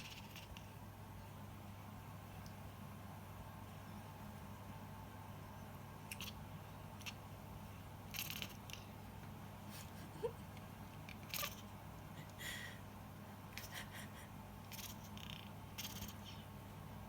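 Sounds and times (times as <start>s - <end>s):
cat chirping: 0.0s - 0.8s, 6.1s - 6.4s, 8.1s - 8.9s, 11.1s - 11.7s, 14.7s - 16.5s
low steady hum: 0.0s - 17.0s.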